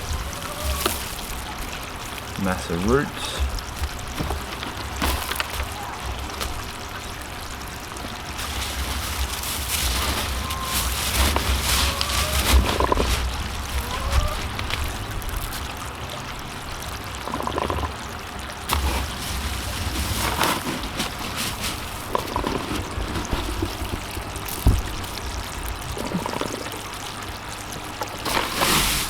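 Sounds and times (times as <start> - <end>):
knocks and rustles of handling: 0.0 - 15.7, 18.7 - 26.8, 27.8 - 29.0
water trickling: 0.0 - 29.0.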